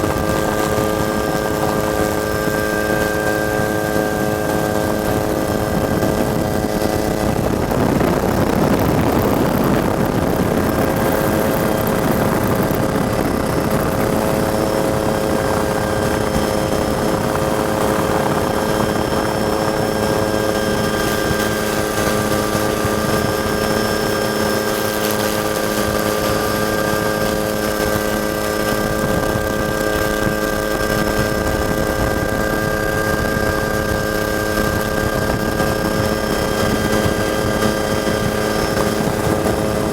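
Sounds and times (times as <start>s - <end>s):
helicopter turbine and rotor: 0.0s - 39.9s.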